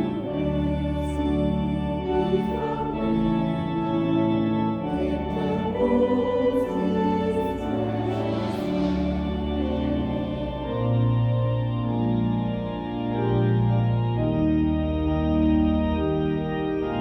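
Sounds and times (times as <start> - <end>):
choir singing sustained chords: 0.0 - 17.0
organ accompaniment: 0.0 - 17.0.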